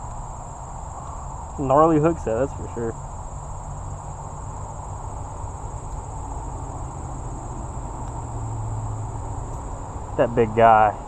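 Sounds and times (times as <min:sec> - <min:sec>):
high-pitched insect chorus: 0:00.0 - 0:11.0
low continuous rumble: 0:00.0 - 0:11.0.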